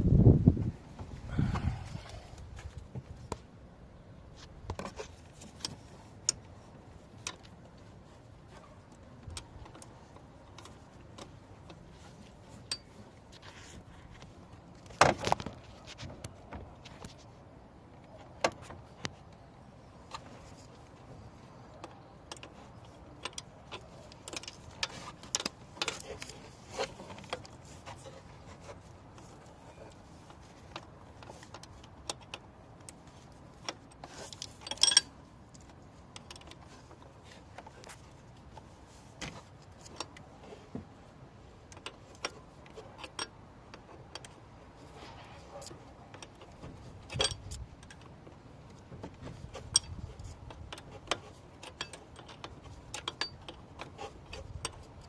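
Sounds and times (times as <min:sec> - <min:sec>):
metal tools clinking: 0:34.2 - 0:35.1.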